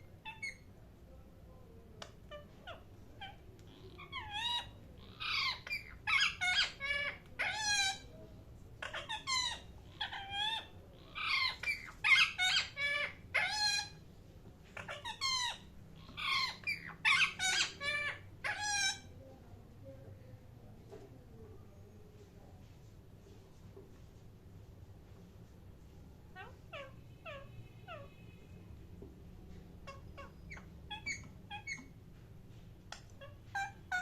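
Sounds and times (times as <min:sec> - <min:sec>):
parrot chirping and squawking: 0:00.1 - 0:00.7, 0:02.0 - 0:08.1, 0:08.8 - 0:14.0, 0:14.7 - 0:19.1, 0:26.3 - 0:28.5, 0:29.8 - 0:32.0, 0:32.9 - 0:34.0.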